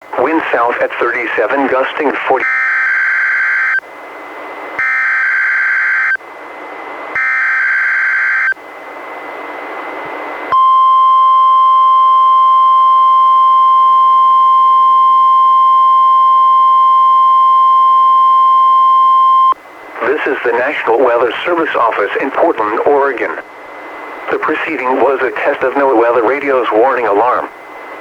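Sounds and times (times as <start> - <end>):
radio hiss: 0.1 - 2.5, 19.9 - 28.0
steady warning alarm tone: 1.7 - 3.9, 4.8 - 6.2, 7.1 - 8.6, 10.5 - 22.9.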